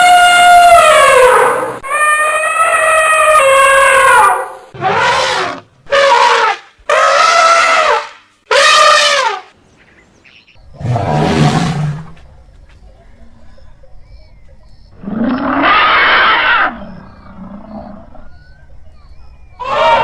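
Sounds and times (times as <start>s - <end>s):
elephant trumpeting: 0.0s - 9.5s, 15.1s - 16.9s, 19.6s - 20.0s.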